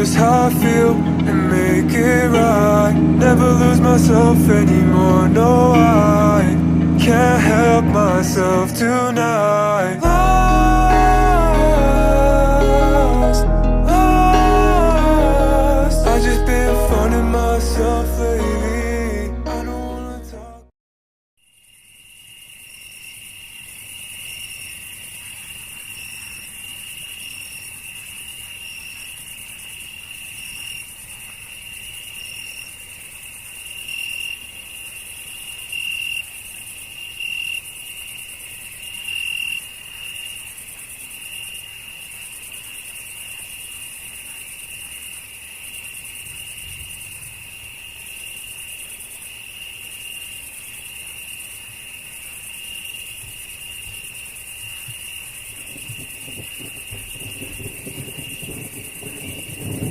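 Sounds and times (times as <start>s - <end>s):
faint insect chirp: 21.4s - 59.9s
insects trilling: 21.4s - 59.9s.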